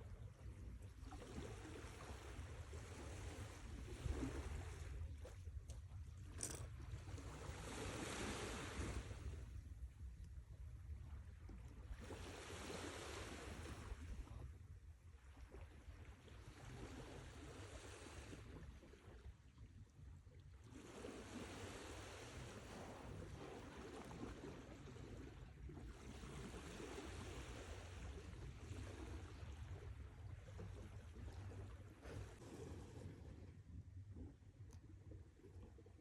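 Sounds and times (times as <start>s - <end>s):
low rumble of sea: 0.0s - 36.0s
waves washing on shore: 7.4s - 9.3s.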